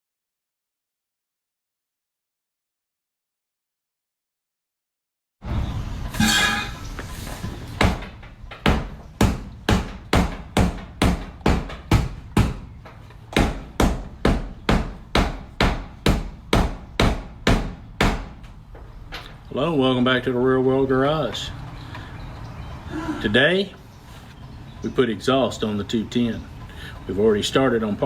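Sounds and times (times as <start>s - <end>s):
ringing hammer blows: 6.2s - 6.9s.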